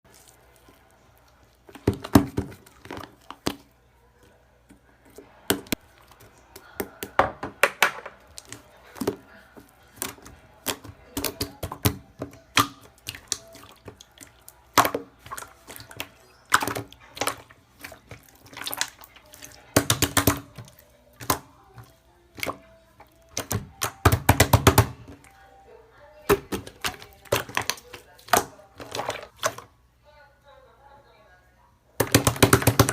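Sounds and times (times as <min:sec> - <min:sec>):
slime clicking and popping: 0:10.0 - 0:22.6, 0:23.3 - 0:25.2, 0:32.0 - 0:32.9.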